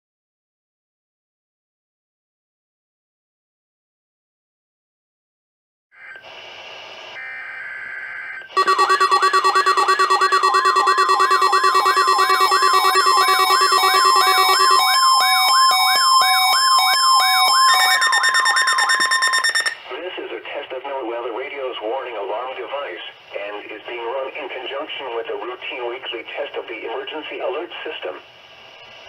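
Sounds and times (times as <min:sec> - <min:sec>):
buzzy digital bursts: 0:08.6 - 0:15.1
high beeping tones: 0:08.6 - 0:19.8
steady warning alarm tone: 0:08.6 - 0:19.8
wailing siren-like sweep: 0:08.6 - 0:19.8.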